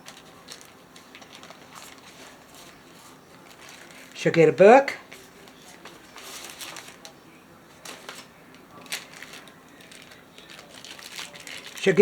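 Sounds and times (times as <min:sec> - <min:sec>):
packaging rustling: 0:00.0 - 0:04.2, 0:05.0 - 0:11.9.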